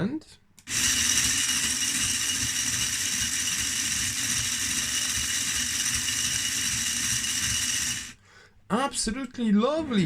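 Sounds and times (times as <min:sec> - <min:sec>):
electric motor whirring: 0:00.6 - 0:08.2.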